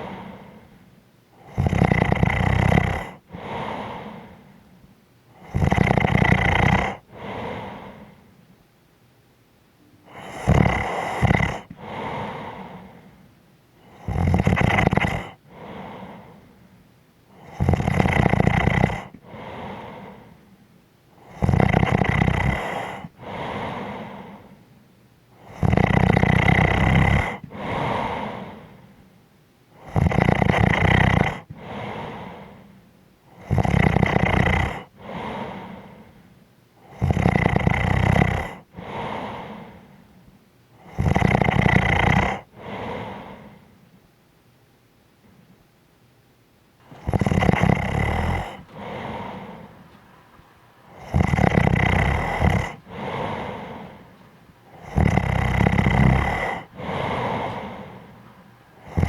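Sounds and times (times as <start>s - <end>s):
person snoring: 0.0s - 0.8s, 1.4s - 4.5s, 5.3s - 8.2s, 10.0s - 13.2s, 13.8s - 16.5s, 17.3s - 20.4s, 21.2s - 24.6s, 25.4s - 29.0s, 29.8s - 36.2s, 36.8s - 40.0s, 40.8s - 43.7s, 46.8s - 49.9s, 50.8s - 58.2s, 58.8s - 59.0s
soft breath: 0.0s - 1.6s, 2.8s - 5.6s, 6.7s - 8.6s, 9.9s - 18.0s, 18.7s - 25.8s, 26.6s - 30.1s, 30.8s - 41.2s, 41.9s - 44.1s, 46.8s - 59.0s.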